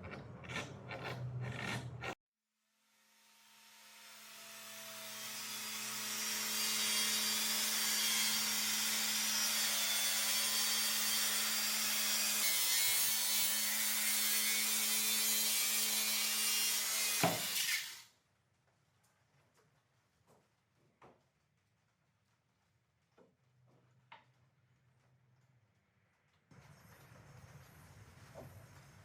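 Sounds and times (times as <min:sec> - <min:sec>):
table saw cutting wood: 0:00.0 - 0:02.2, 0:02.9 - 0:18.1.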